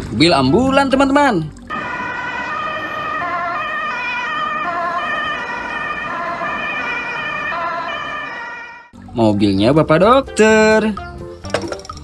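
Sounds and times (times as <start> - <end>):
ambulance siren wailing: 1.7 - 9.0.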